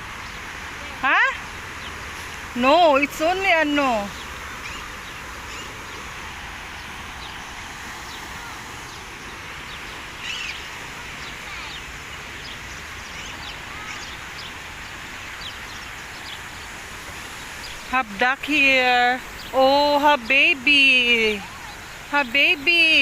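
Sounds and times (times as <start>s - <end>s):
small birds chirping: 0.1s - 23.0s.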